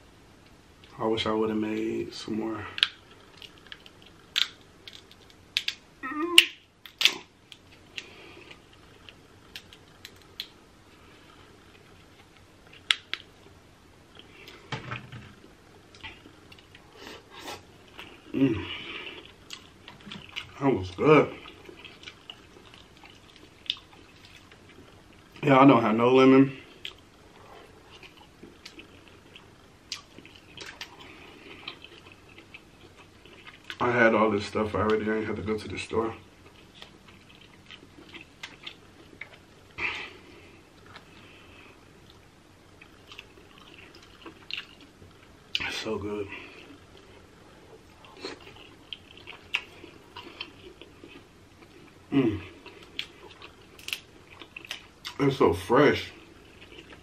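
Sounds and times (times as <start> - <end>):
faint eating clicks and mouth smacks: 2.7 - 5.8, 6.4 - 10.6, 11.6 - 14.7, 15.8 - 16.9, 19.0 - 25.5, 26.6 - 33.9, 36.2 - 39.5, 40.7 - 45.8, 46.5 - 55.4, 56.1 - 57.0
crab shell cracking: 2.8 - 5.8, 9.0 - 10.6
wet chewing: 15.9 - 25.4, 26.7 - 33.8, 36.4 - 41.4, 42.8 - 45.7, 46.5 - 55.2, 56.2 - 57.0.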